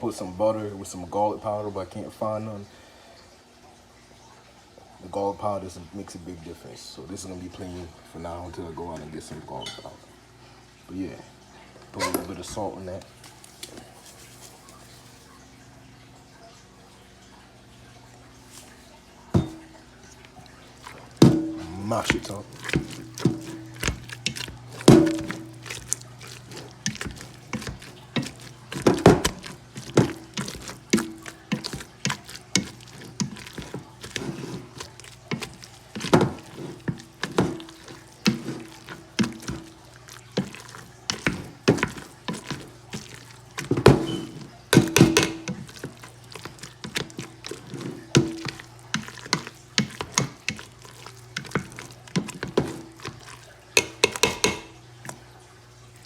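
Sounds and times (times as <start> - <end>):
masher squelching through potatoes: 18.4 - 55.3
masher knocking against pot: 43.6 - 45.7, 53.8 - 54.7.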